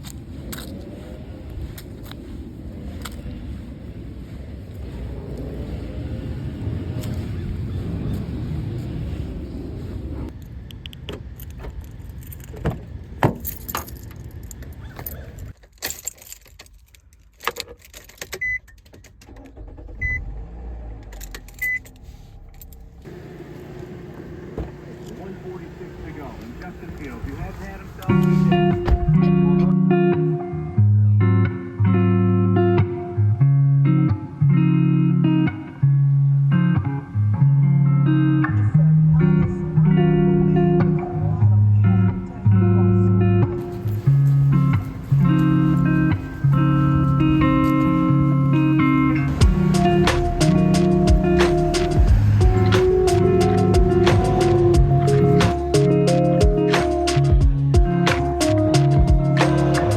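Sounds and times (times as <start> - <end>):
keys jingling: 11.3 - 18.9
guitar instrumental music: 28.0 - 59.9.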